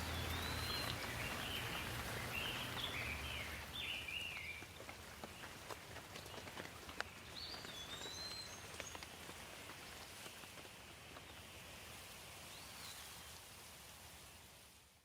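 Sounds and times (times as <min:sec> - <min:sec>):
rain pattering softly: 0:00.0 - 0:15.0.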